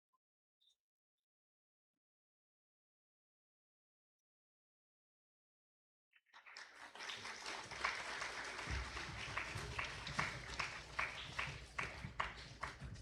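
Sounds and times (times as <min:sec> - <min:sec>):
people clapping in rhythm: 0:06.3 - 0:13.0.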